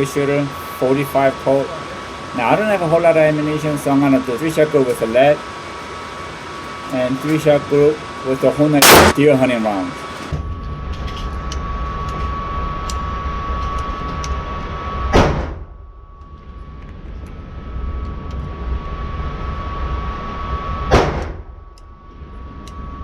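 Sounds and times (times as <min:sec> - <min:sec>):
faint hum: 0:00.0 - 0:23.0
gunshots with echo: 0:08.8 - 0:09.2.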